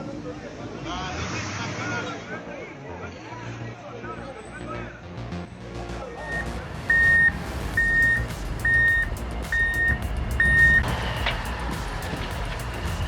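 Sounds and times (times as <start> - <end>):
reversing alarm beeping: 6.2 - 10.9.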